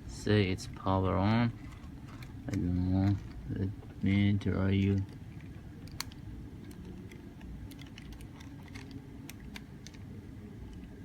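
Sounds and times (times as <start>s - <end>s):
low steady hum: 0.0s - 11.0s
plastic parts clicking: 5.8s - 10.0s.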